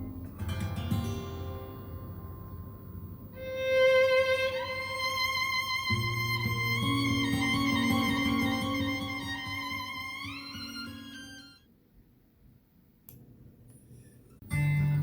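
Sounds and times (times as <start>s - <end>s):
violin melody: 3.4s - 11.6s
bass: 14.4s - 15.0s.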